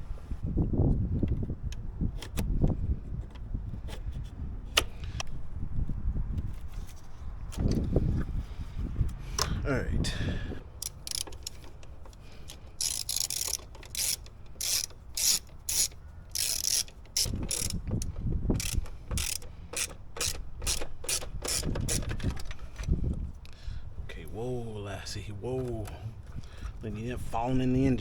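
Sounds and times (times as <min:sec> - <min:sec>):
ratchet pawl clicking: 0:10.8 - 0:11.8, 0:12.4 - 0:22.1.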